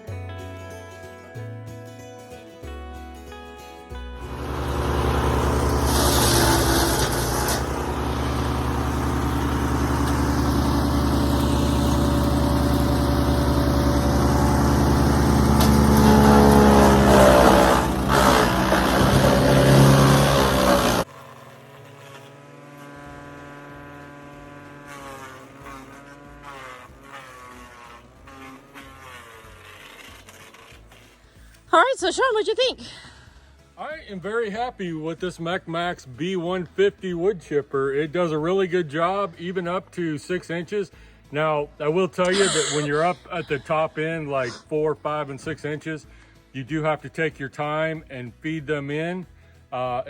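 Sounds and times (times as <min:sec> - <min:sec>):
wood chipper engine running: 0:04.0 - 0:31.6, 0:42.3 - 0:44.7.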